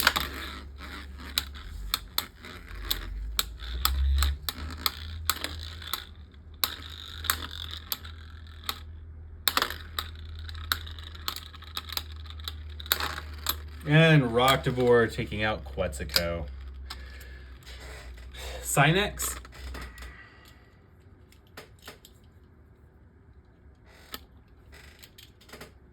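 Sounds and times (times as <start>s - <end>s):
spinning tops clattering: 0.0s - 16.9s.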